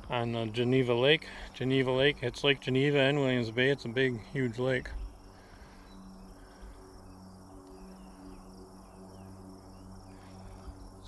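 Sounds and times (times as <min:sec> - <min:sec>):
insect trilling: 0:00.0 - 0:11.0
low steady hum: 0:00.0 - 0:11.0
distant bird chirps: 0:02.8 - 0:11.0.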